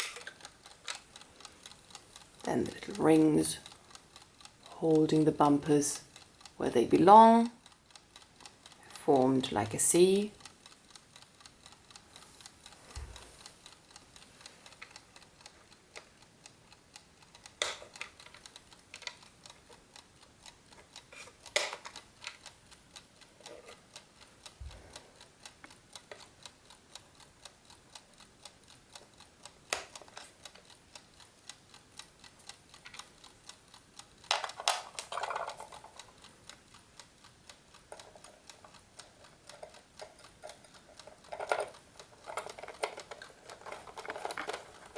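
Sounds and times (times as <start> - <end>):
clock being handled: 0.0 - 1.2, 17.6 - 19.8, 20.8 - 22.4, 34.2 - 36.2, 37.9 - 44.9
clock ticking: 0.0 - 44.9.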